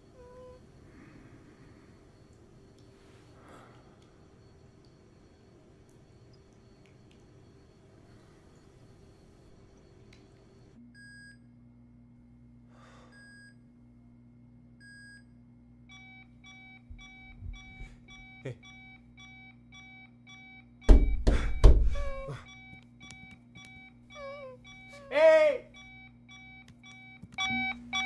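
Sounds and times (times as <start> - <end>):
electronic alarm beeping: 15.9 - 28.0
loud thumps: 20.9 - 22.0.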